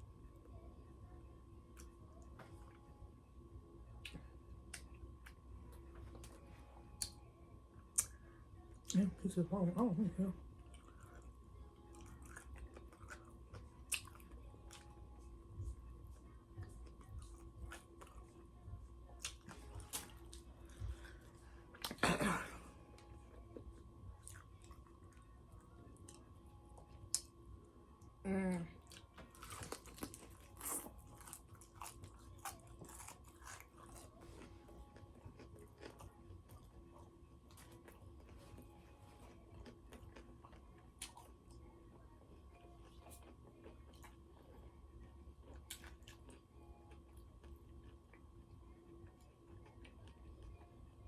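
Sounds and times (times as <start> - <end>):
crunchy chewing: 10.6 - 14.9, 28.8 - 41.6.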